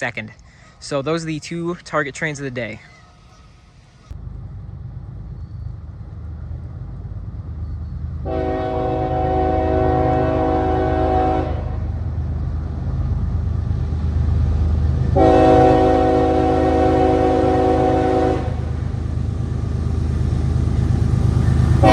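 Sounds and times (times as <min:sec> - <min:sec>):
train rumble: 0:00.0 - 0:21.9
locomotive air horn blasts: 0:08.2 - 0:11.9, 0:15.2 - 0:18.8.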